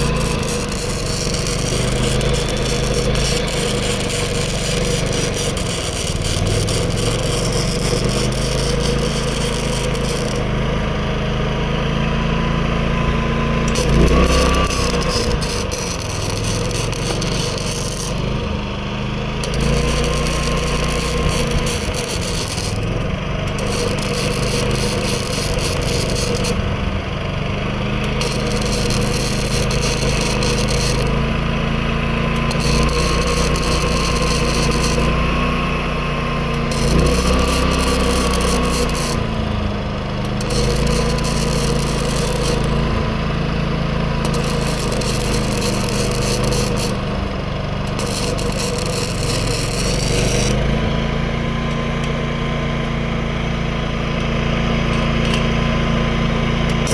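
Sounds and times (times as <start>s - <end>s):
welding arc crackling: 0.0s - 11.8s, 12.9s - 56.9s
generator engine running: 0.0s - 56.9s.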